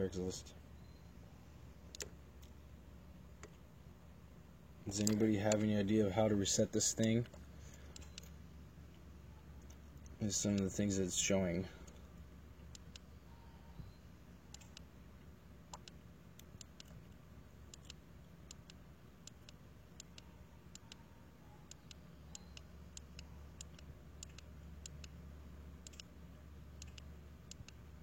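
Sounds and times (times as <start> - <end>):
low steady hum: 0.0 - 28.0
faint sharp clicks: 26.8 - 27.8.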